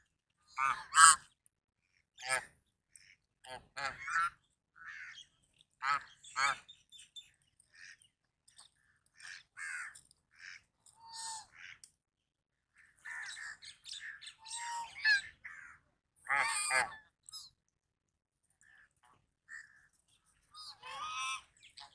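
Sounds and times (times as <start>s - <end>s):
geese honking: 0.5s - 1.3s, 13.0s - 17.0s, 20.6s - 21.9s.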